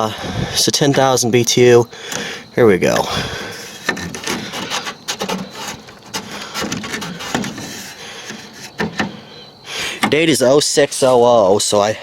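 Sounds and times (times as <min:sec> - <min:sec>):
rubbing and scraping: 0:03.3 - 0:10.2.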